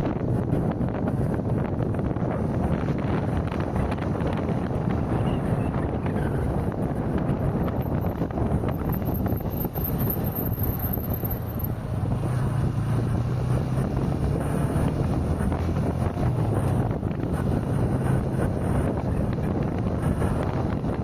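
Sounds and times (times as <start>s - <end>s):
wind noise on microphone: 0.0s - 21.0s.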